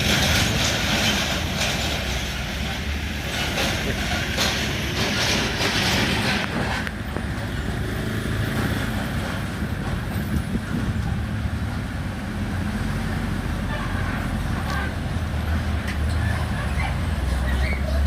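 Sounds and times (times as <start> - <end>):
train wheels clattering on rails: 0.0 - 12.0
road vehicle engines idling: 0.0 - 18.0.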